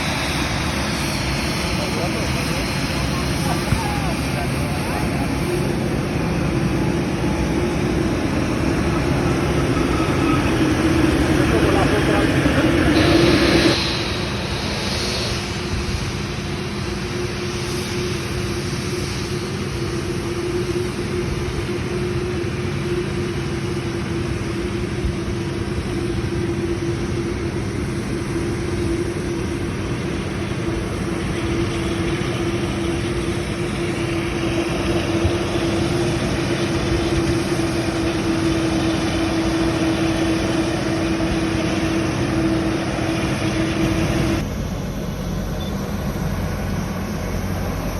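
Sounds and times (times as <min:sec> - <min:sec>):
jet engines droning: 0:00.0 - 0:47.9.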